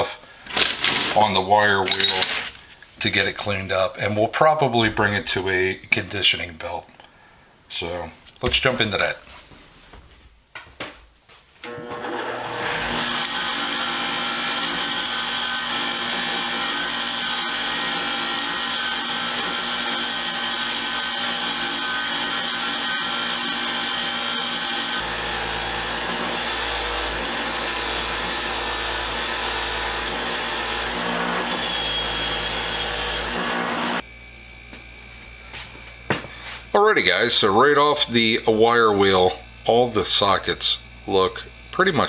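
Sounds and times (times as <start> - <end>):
wire wheel scrubbing metal: 12.0 - 34.0.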